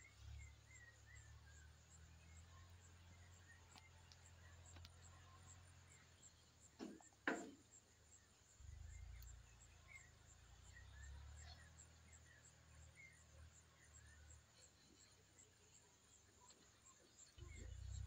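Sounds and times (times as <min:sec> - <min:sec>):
faint chirps: 0:00.0 - 0:18.0
short knocks: 0:06.8 - 0:07.6.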